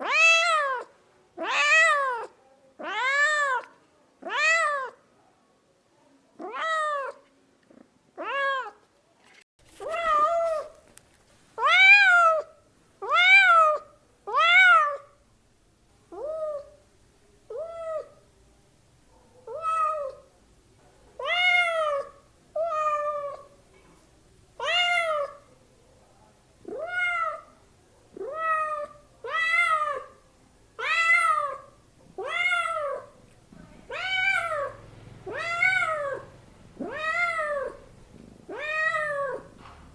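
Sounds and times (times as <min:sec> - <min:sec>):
cat meowing: 0:00.0 - 0:05.0, 0:11.6 - 0:15.1, 0:16.1 - 0:16.8, 0:17.5 - 0:18.2, 0:19.5 - 0:20.3, 0:21.2 - 0:23.5, 0:24.6 - 0:25.4, 0:26.6 - 0:27.6, 0:28.2 - 0:30.2, 0:30.8 - 0:33.2, 0:33.9 - 0:37.9, 0:38.5 - 0:39.6.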